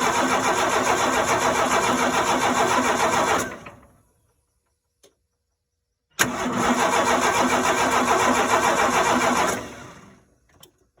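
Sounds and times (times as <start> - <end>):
engine cranking on starter: 0.0 - 4.0, 6.2 - 10.8.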